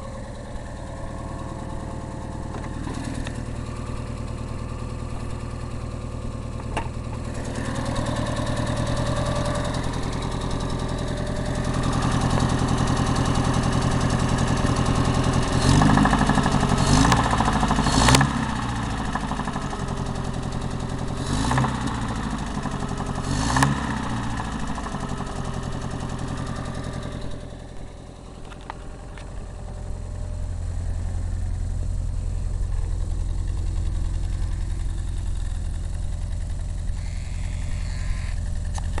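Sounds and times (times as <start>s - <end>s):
engine knocking and revving: 0.0s - 39.0s.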